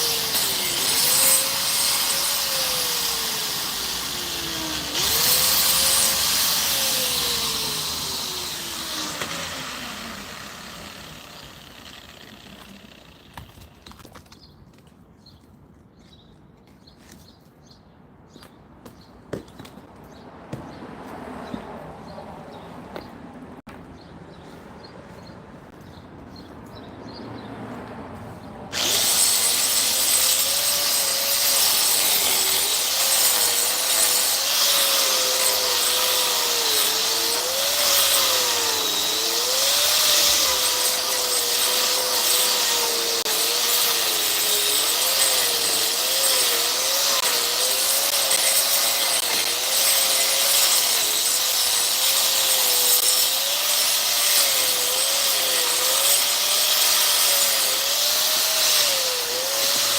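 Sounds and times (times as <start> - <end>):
power tool motor running: 0.0 - 13.7, 28.7 - 59.9.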